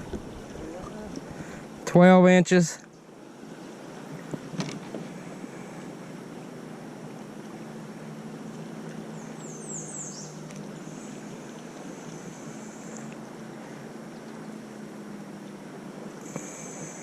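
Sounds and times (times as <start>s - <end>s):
water: 0.0s - 17.0s
wind: 0.0s - 17.0s
bird chirping: 9.1s - 12.3s.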